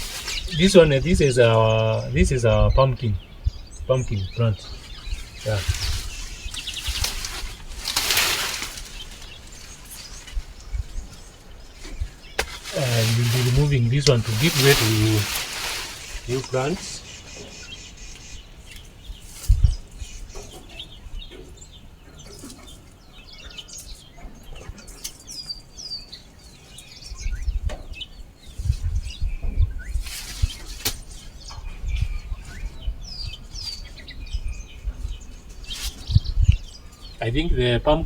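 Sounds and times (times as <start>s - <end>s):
plants rustling and snapping: 0.0s - 1.9s, 4.4s - 17.1s, 30.0s - 31.6s
wind gusts on microphone: 0.0s - 21.4s, 27.0s - 38.0s
birds chirping: 0.0s - 38.0s.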